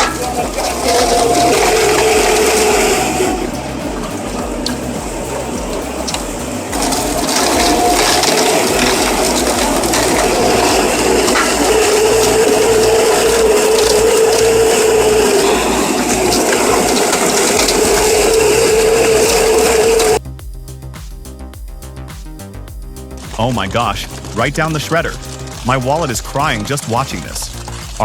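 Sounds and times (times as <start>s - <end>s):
shredding machine grinding: 0.0s - 20.2s.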